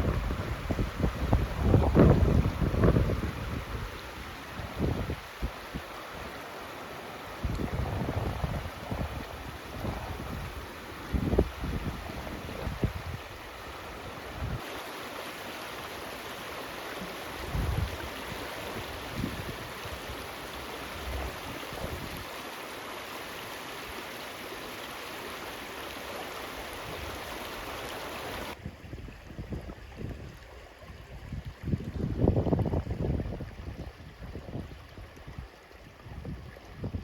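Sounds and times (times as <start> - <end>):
wind buffeting microphone: 0.0 - 5.8, 7.4 - 14.6, 17.4 - 20.1, 28.5 - 37.0
flowing water rushing: 0.0 - 37.0.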